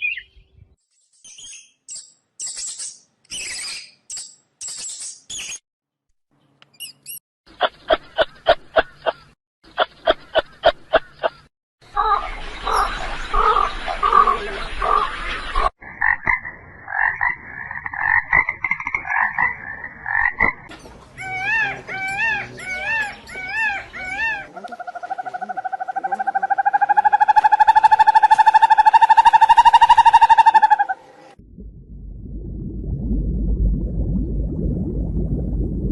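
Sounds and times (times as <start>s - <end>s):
frogs croaking: 15.8s - 20.7s, 24.5s - 31.0s
frog rising-and-falling calls: 21.2s - 31.2s
frog rapid trill: 24.9s - 31.0s.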